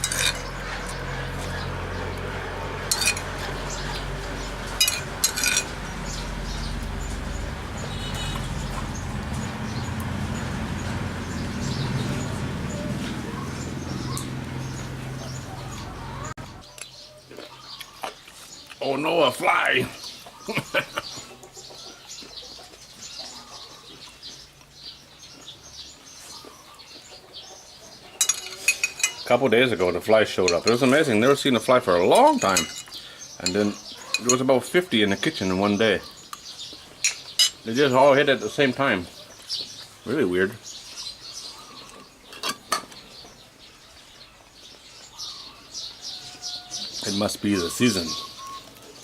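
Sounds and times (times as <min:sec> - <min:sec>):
cutlery clinking against dish: 0:00.0 - 0:00.5, 0:28.2 - 0:29.3, 0:32.4 - 0:34.4, 0:42.3 - 0:43.0
small birds chirping: 0:00.0 - 0:49.0.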